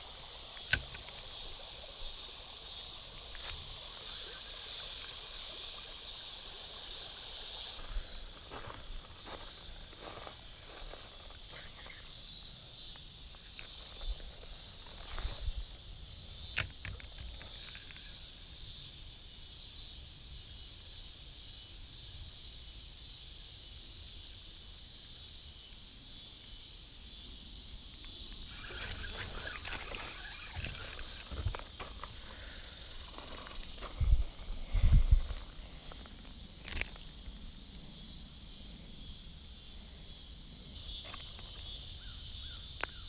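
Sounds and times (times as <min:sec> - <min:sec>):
insects chorus: 0:00.0 - 0:43.0
sharp clicks: 0:00.5 - 0:01.3.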